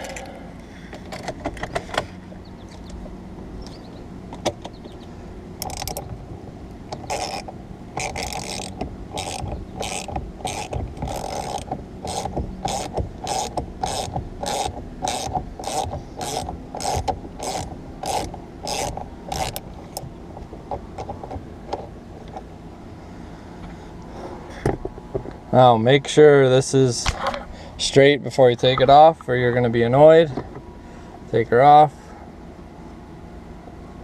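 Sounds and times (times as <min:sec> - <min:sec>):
ratchet wrench clicking: 0:05.6 - 0:06.0, 0:06.9 - 0:20.0.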